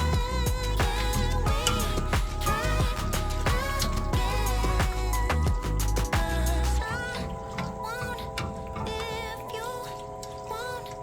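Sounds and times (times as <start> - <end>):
drum hits: 0.0 - 6.5
low gliding bass: 0.0 - 6.9
person singing over a beat: 0.0 - 9.9.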